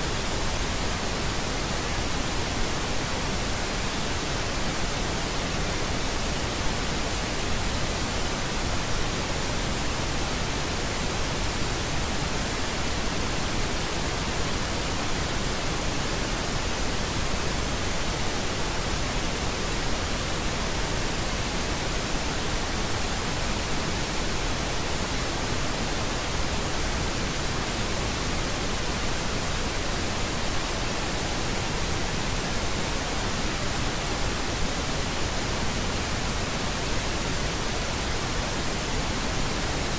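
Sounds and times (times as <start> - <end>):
steady pink noise hiss: 0.0 - 39.9.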